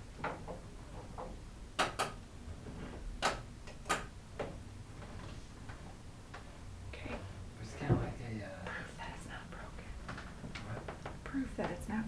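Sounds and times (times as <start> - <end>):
ceiling fan running: 0.0 - 12.0
fan clicking and ticking: 0.2 - 2.2, 3.2 - 4.7.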